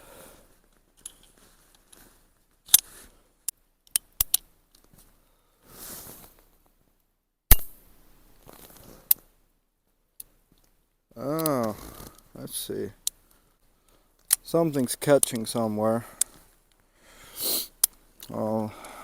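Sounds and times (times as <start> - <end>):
revolver metallic clicks: 3.9 - 4.5.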